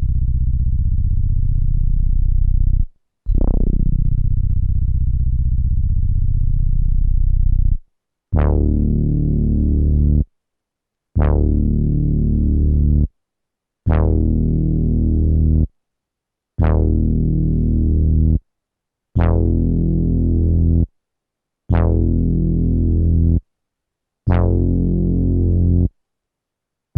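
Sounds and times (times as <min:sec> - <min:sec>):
low synthesizer note: 0:03.3 - 0:04.5.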